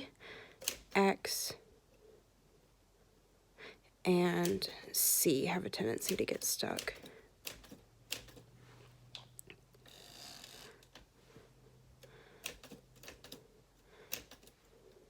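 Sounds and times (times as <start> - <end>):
soft rustle: 8.6 - 9.1.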